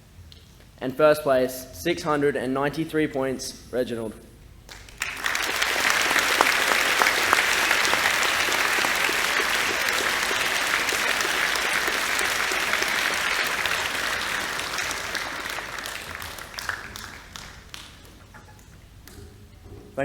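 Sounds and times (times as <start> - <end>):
audience applauding: 4.7 - 18.8.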